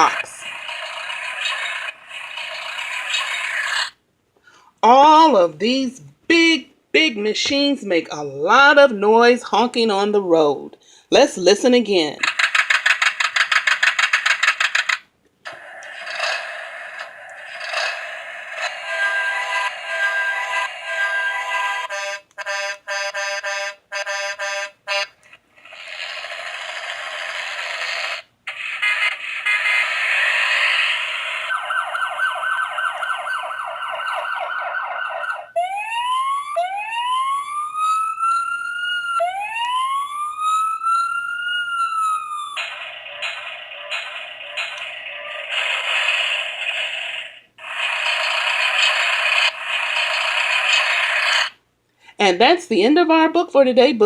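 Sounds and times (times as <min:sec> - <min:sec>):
tinny car horn beeping: 0:18.8 - 0:25.1.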